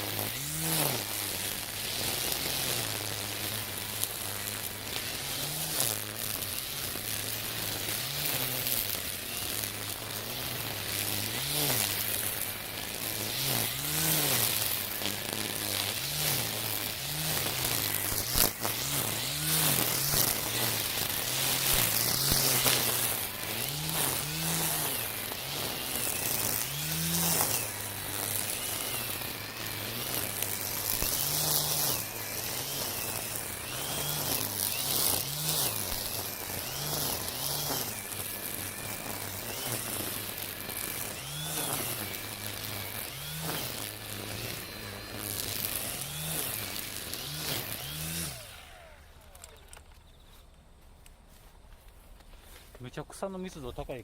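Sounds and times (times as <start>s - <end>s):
brushcutter motor whine: 0.0s - 54.0s
trimmer line thrashing grass: 0.0s - 54.0s.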